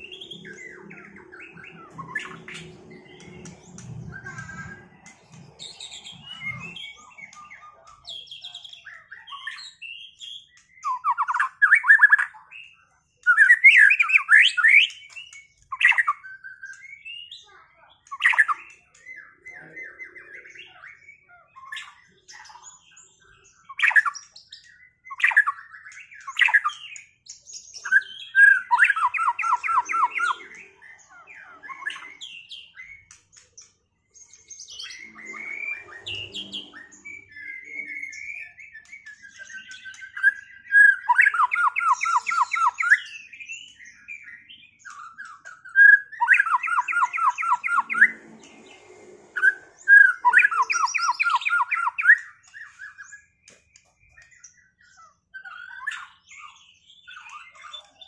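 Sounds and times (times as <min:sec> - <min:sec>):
birds singing whistles and chirps: 0:00.0 - 0:58.0
fast rattling bird trills: 0:45.0 - 0:52.6.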